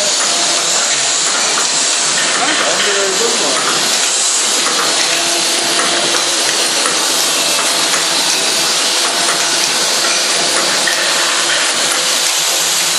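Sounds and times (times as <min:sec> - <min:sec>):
machine hissing: 0:00.0 - 0:12.9.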